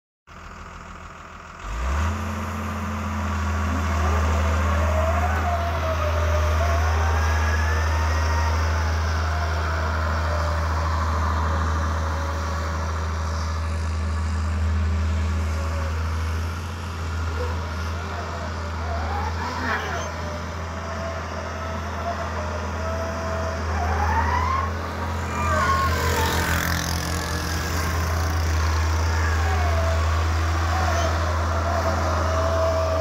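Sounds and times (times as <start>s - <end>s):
excavator diesel engine running: 0.3s - 33.0s.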